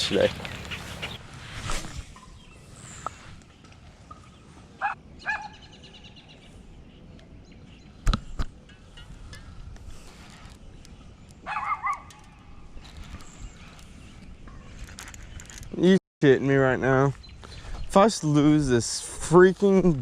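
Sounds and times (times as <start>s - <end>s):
dog barking: 4.8s - 5.5s, 11.5s - 12.0s.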